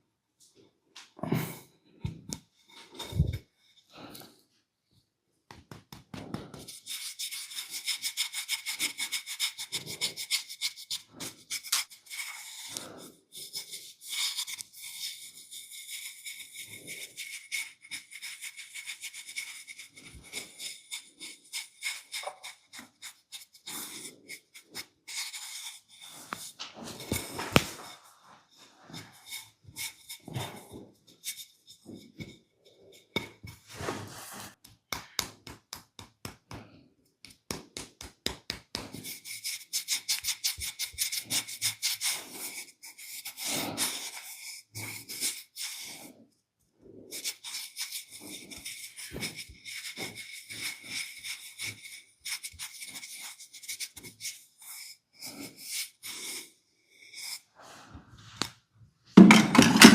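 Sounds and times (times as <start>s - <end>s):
hands rubbing and patting skin: 5.5s - 44.2s, 47.1s - 55.9s.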